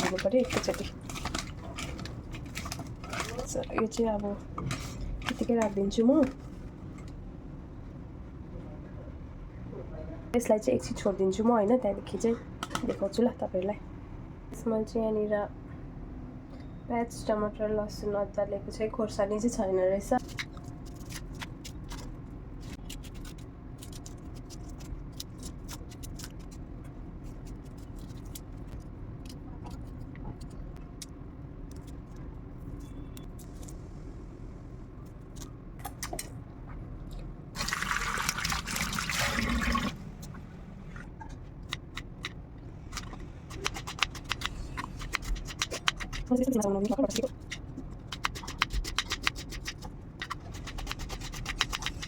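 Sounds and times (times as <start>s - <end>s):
steady low hum: 0.0s - 52.0s
water running: 37.6s - 41.2s.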